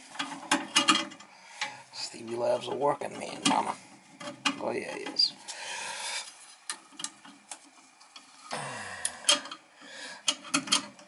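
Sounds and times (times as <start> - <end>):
tools and metal parts clicking: 10.3 - 11.0.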